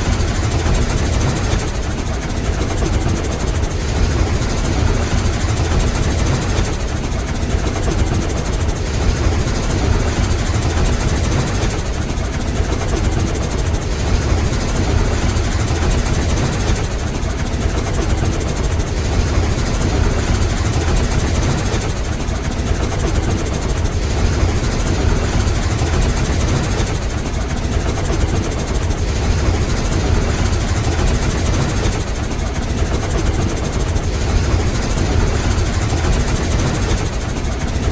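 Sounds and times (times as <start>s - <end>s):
steam locomotive exhaust chuffing: 0.0s - 37.9s.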